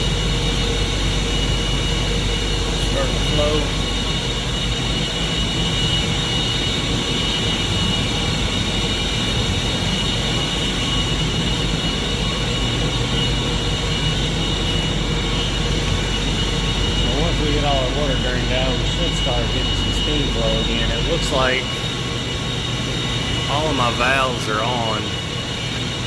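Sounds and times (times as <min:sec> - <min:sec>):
high machine whines: 0:00.0 - 0:26.0
machinery low hum: 0:00.0 - 0:26.0.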